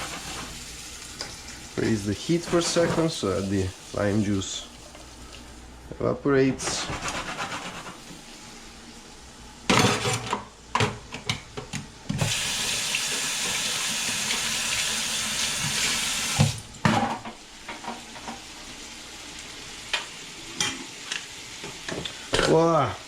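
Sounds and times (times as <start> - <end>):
kitchen tap running: 0.0 - 5.6, 11.6 - 16.8.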